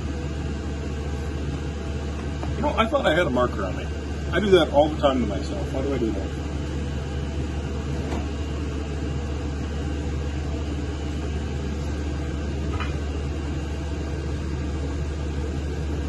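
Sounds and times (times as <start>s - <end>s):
motor or fan humming: 0.0s - 16.0s.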